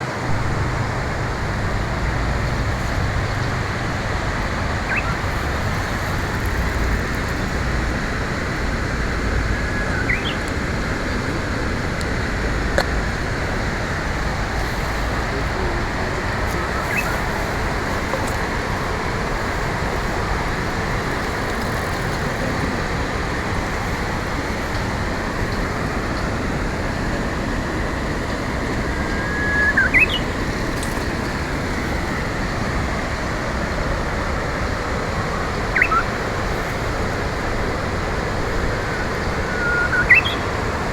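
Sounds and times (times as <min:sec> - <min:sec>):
loud rushing background noise: 0:00.0 - 0:40.9
bird whistled notes: 0:04.8 - 0:05.3, 0:09.6 - 0:10.4, 0:16.6 - 0:17.3, 0:29.1 - 0:30.3, 0:35.7 - 0:36.2, 0:39.2 - 0:40.6.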